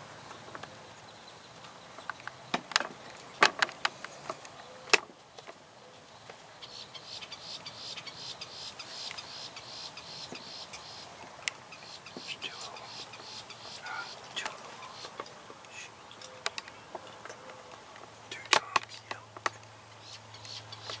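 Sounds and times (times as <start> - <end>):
sharp clicks: 18.4 - 19.6.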